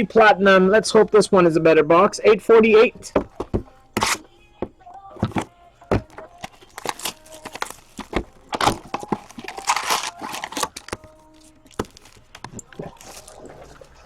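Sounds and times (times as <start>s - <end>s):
plastic and foil wrappers crinkling: 3.3s - 4.3s, 5.0s - 14.0s.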